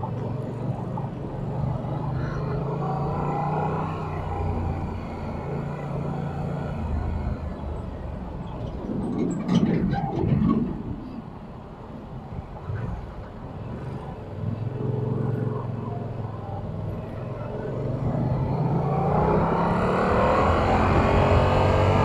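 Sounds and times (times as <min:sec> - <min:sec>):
motorcycle engine revving: 0:17.4 - 0:22.0.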